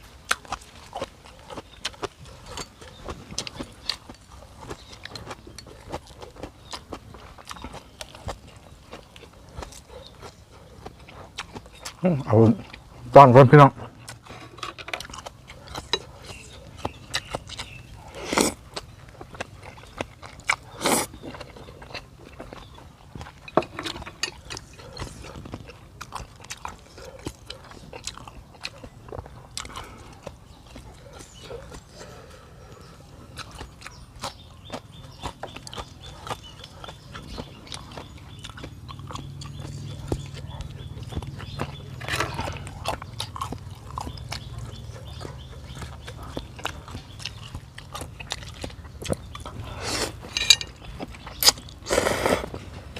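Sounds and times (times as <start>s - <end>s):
chewing and mouth smacks: 0.0s - 13.1s, 13.8s - 52.9s.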